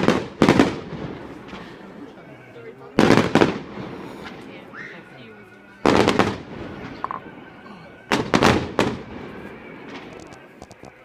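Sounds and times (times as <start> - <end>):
fireworks bangs with crackling: 0.0 - 1.7, 3.0 - 4.5, 5.8 - 7.5, 8.1 - 11.0.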